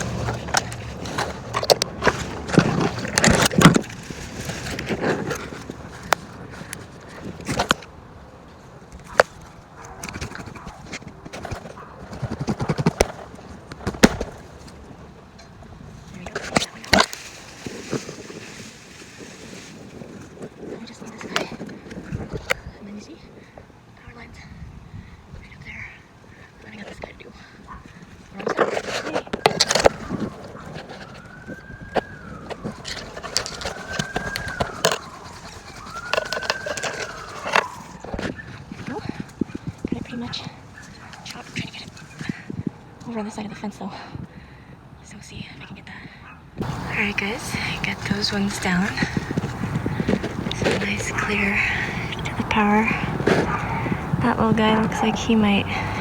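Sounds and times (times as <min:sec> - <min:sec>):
leafy branches rustling: 0:00.0 - 0:23.4, 0:26.2 - 0:43.6, 0:46.6 - 0:56.0
distant siren wailing: 0:29.3 - 0:39.2, 0:46.6 - 0:56.0.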